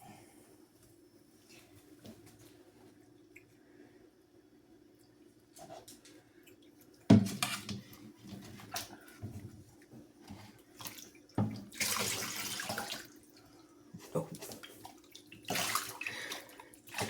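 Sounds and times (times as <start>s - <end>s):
water splashing in a bath tub: 5.0s - 17.0s.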